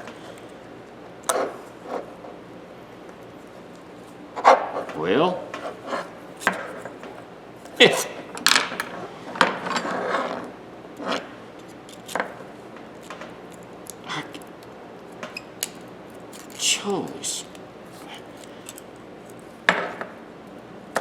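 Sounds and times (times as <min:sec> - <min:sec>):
metal tools clicking and scraping: 0:11.6 - 0:12.2, 0:13.0 - 0:19.6.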